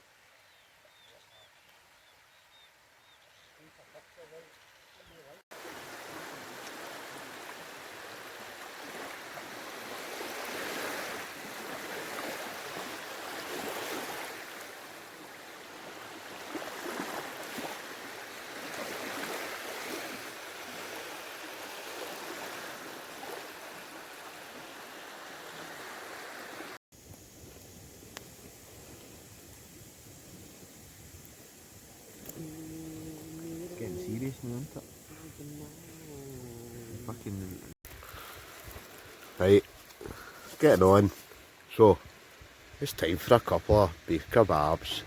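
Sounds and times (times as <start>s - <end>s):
waves washing onto a beach: 5.5s - 26.8s
steady hiss: 27.0s - 45.0s.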